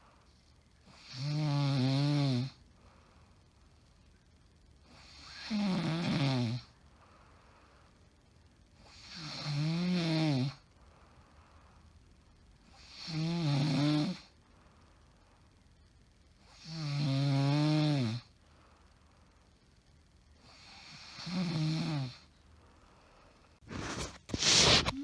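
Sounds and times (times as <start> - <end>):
woman snoring: 5.1 - 6.7, 12.8 - 14.3, 16.6 - 18.3.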